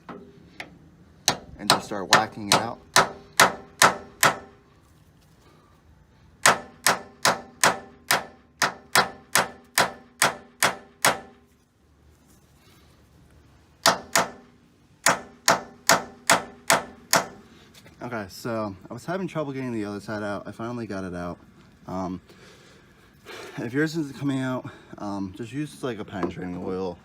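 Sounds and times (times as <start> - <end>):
hammer striking steel punch: 1.3 - 4.6, 6.4 - 11.4, 13.8 - 17.4.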